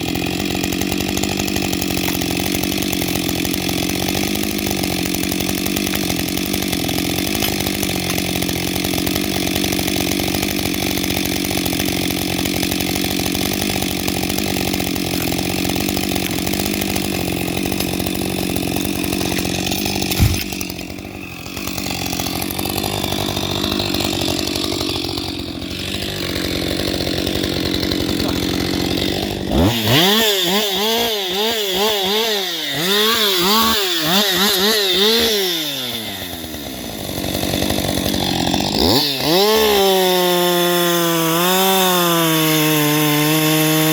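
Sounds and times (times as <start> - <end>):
chainsaw cutting wood: 0.0 - 43.9.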